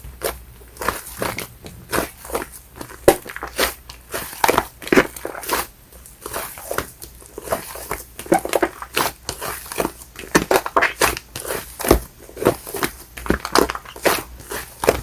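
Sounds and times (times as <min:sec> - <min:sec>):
slime crackling and squishing: 0:00.0 - 0:15.0.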